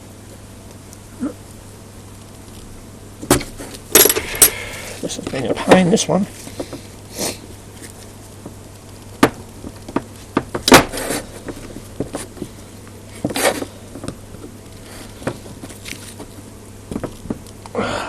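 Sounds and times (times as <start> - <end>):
metal parts clicking and knocking: 3.9 - 4.6.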